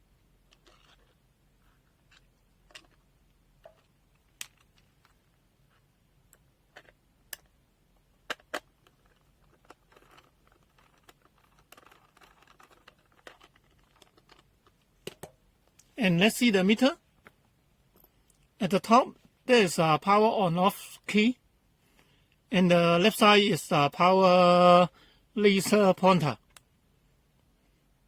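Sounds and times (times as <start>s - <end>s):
small plastic clicks and knocks: 8.2s - 15.9s.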